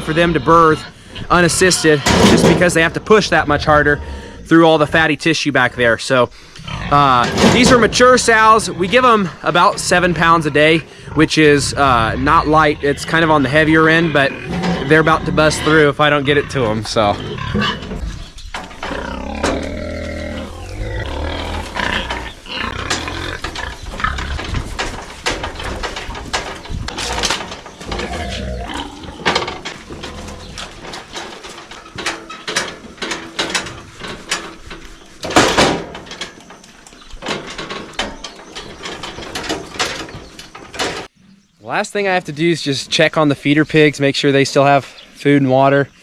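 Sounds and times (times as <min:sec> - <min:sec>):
metal clanks and rattles: 0:00.0 - 0:04.1, 0:06.6 - 0:41.2
pigs squealing and grunting: 0:00.0 - 0:04.7, 0:06.6 - 0:32.6.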